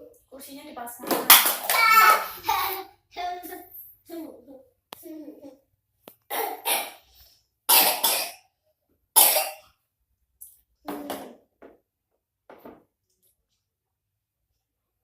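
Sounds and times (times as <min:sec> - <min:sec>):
person coughing: 0:06.3 - 0:07.0, 0:07.7 - 0:08.4, 0:09.2 - 0:09.6.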